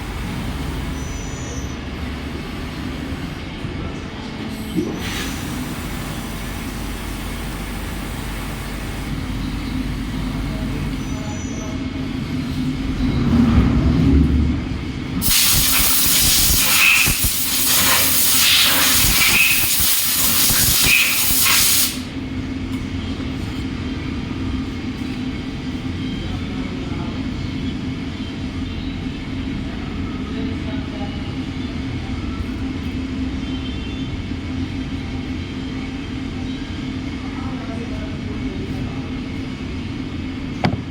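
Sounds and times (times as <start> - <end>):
machine hum: 0.0 - 21.3
loud hiss: 15.2 - 22.1.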